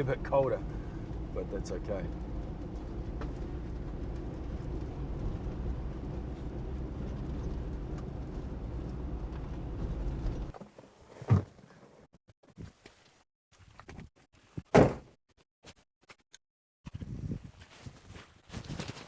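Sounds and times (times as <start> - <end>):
vehicle engine idling: 0.0 - 10.5
door shutting thud: 14.8 - 15.0.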